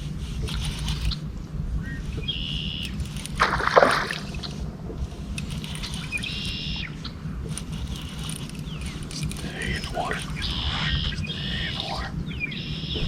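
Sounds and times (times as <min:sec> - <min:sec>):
low rumble: 0:00.0 - 0:13.0
fish splashing in water: 0:03.2 - 0:06.4.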